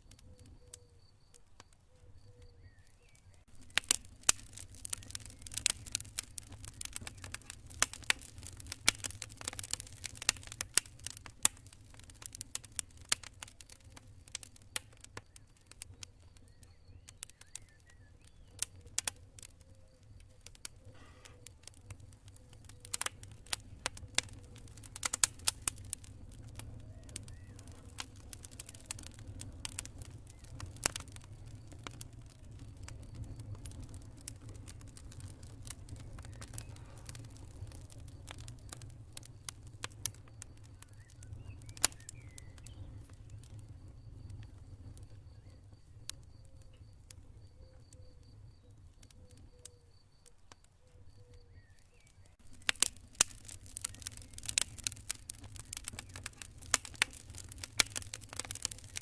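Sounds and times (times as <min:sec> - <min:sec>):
faint cricket chirping: 0:00.0 - 0:04.5, 0:13.0 - 0:59.0
low rumble of flames: 0:00.0 - 0:59.0
wood crackling and popping: 0:00.0 - 0:59.0.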